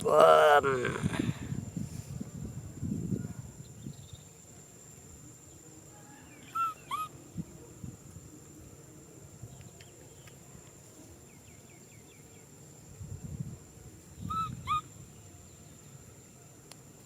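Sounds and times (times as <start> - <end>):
baby monkey squealing: 6.6 - 7.1, 14.3 - 14.8.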